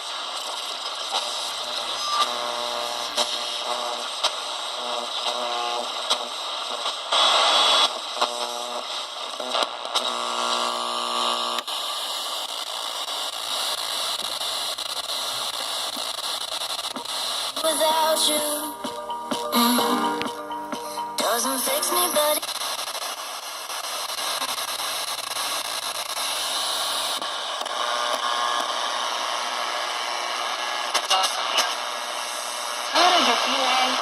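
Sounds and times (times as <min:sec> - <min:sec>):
buzzing radio tones: 0:00.0 - 0:34.0
radio static and hiss: 0:00.0 - 0:34.0
loud burst of noise: 0:21.4 - 0:34.0.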